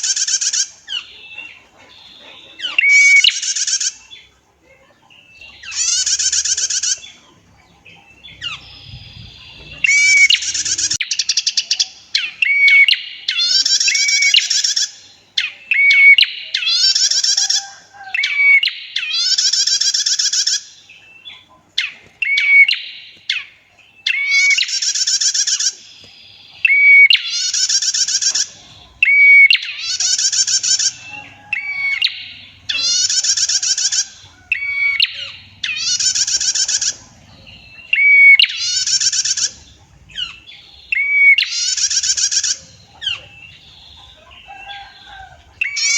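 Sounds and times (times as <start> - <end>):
bird buzzy trills: 5.4 - 15.0, 24.3 - 45.9.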